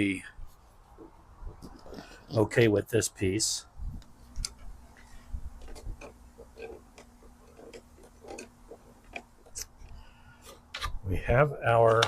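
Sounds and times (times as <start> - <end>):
faint steady hum: 0.0 - 12.0
small parts clicking and tapping: 4.0 - 11.0, 11.8 - 12.0.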